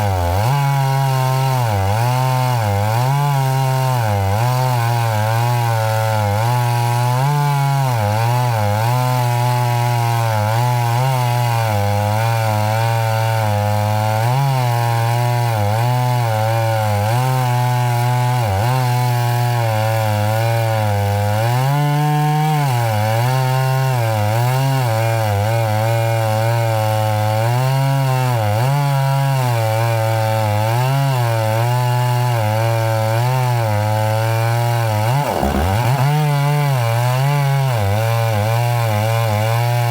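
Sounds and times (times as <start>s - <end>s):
chainsaw cutting wood: 0.0s - 21.6s, 31.9s - 39.9s.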